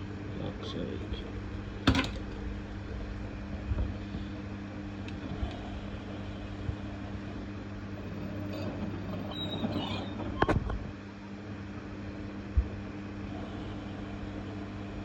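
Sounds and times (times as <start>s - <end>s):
washing machine drum humming: 1.1s - 11.8s.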